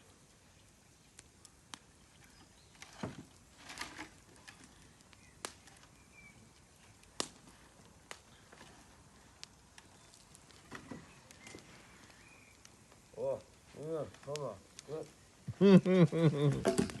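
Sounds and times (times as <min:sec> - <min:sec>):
wood bonfire crackling: 0:00.0 - 0:17.0.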